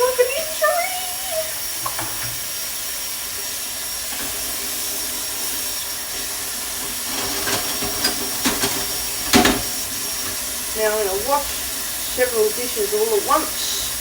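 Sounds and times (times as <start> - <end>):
tap water running into sink: 0.0 - 14.0
dishes and utensils clinking: 6.8 - 10.4.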